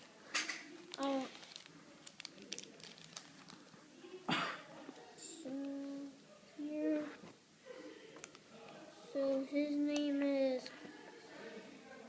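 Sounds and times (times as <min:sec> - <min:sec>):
packaging crinkling: 0:00.9 - 0:03.8.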